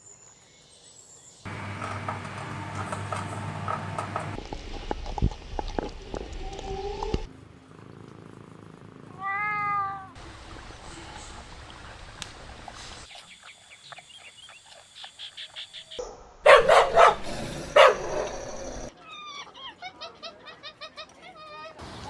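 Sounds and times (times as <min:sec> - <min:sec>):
cat meowing: 0:09.1 - 0:10.2.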